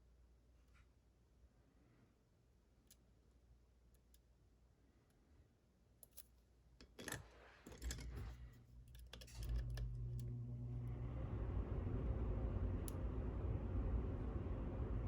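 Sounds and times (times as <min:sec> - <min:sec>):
lock parts clicking and rattling: 0:06.0 - 0:08.2
steady low hum: 0:07.8 - 0:15.0.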